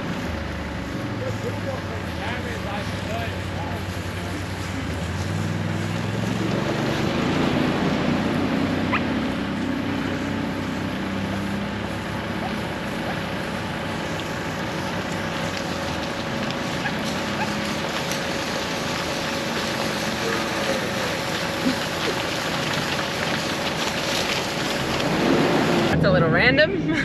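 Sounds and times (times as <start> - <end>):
vehicle engine: 0.0 - 27.0.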